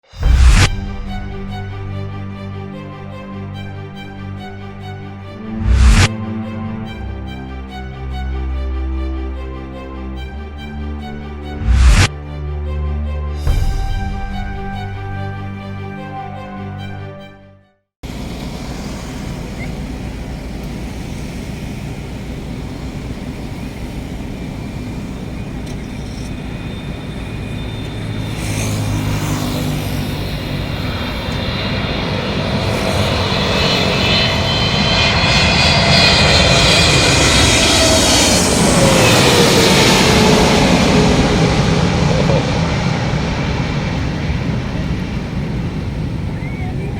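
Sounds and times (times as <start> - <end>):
high engine fan whine: 4.0 - 9.4, 18.0 - 46.9
jet airliner engine noise: 18.0 - 46.9.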